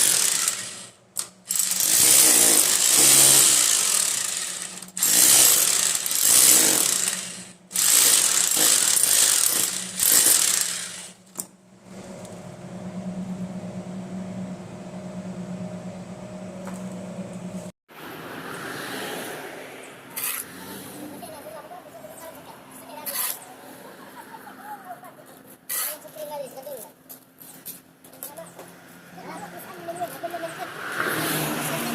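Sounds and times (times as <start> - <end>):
hammer drill drilling: 0.0 - 11.2.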